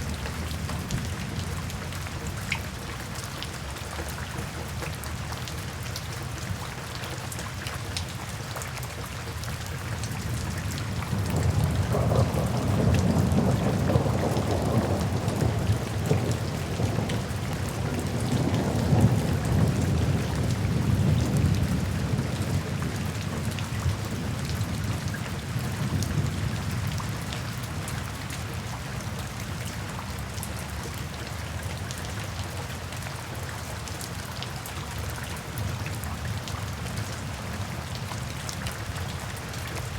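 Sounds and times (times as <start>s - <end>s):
steady rain: 0.0s - 39.9s
rolling thunder: 11.0s - 23.1s.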